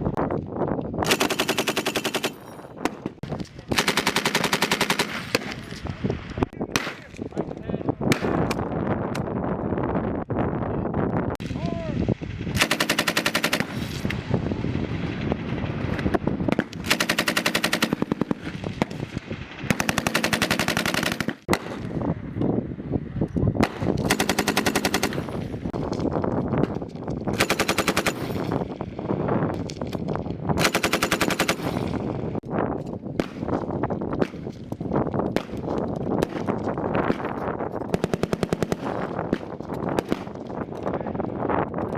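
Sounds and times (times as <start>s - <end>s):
machine gun bursts: 1.0s - 2.4s, 3.7s - 5.4s, 12.6s - 13.7s, 16.9s - 18.3s, 19.7s - 21.4s, 24.1s - 25.3s, 27.4s - 28.4s, 30.6s - 31.8s.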